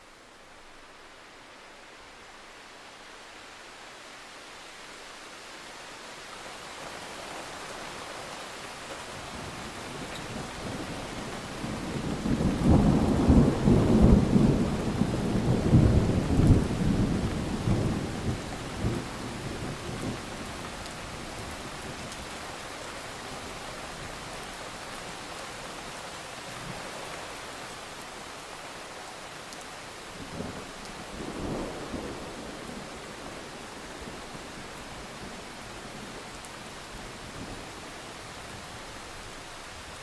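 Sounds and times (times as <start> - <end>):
steady rainfall: 0.0 - 40.0.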